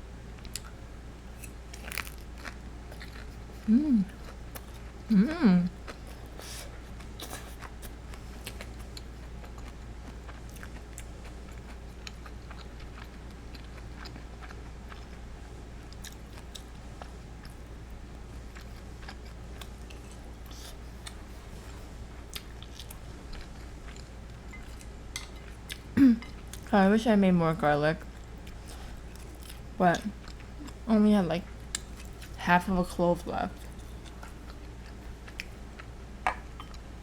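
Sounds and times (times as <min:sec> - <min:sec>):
steady low hum: 0:00.0 - 0:37.0
chewing and crunching food: 0:00.3 - 0:26.8, 0:27.5 - 0:37.0.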